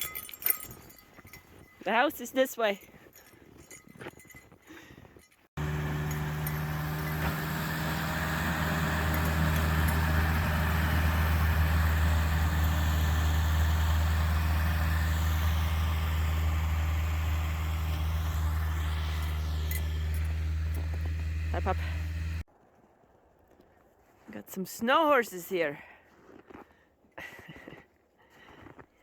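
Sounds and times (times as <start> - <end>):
engine running with deep hum: 5.6 - 22.5.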